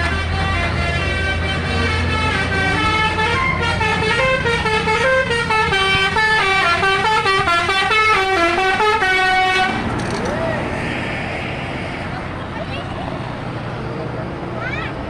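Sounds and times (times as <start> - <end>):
musical air horn tune: 0.0 - 9.8
low hum of bus: 0.0 - 15.0.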